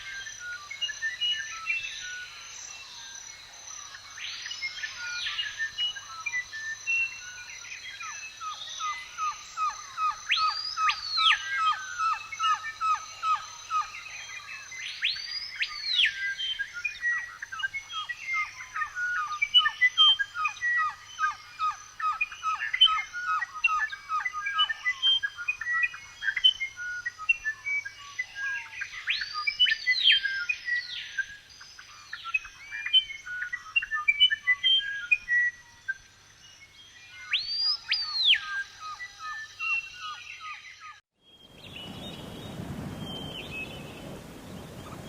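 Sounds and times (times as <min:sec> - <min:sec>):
songbirds singing: 0:00.0 - 0:45.0
bird rising and falling call: 0:41.4 - 0:45.0.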